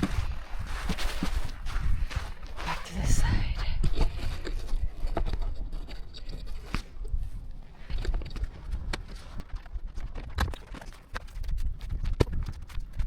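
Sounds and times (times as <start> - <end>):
crunches in snow: 0.0 - 10.1
low rumble: 1.7 - 4.9.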